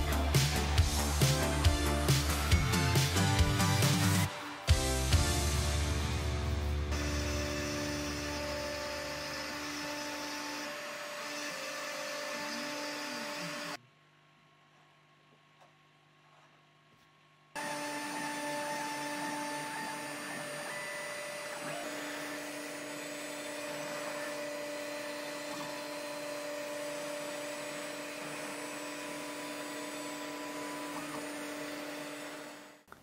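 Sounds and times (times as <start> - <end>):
router motor whine and cutting: 6.5 - 13.8, 17.6 - 32.9.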